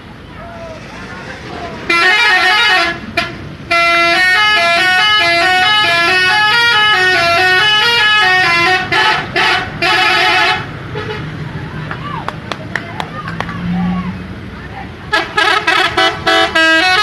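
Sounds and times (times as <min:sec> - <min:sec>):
musical bus air horn: 0:00.4 - 0:11.2, 0:15.1 - 0:17.0.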